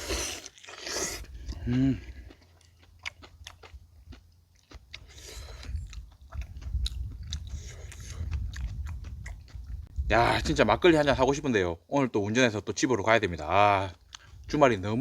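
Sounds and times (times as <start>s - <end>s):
person chewing wetly: 0.0s - 10.0s, 14.0s - 14.5s
low rumble: 5.5s - 11.4s.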